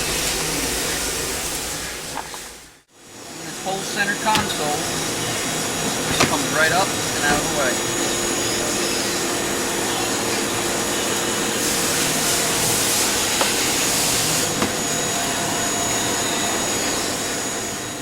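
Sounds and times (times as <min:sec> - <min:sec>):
high hiss rush: 0:03.4 - 0:15.0
machine whirring: 0:03.4 - 0:16.4.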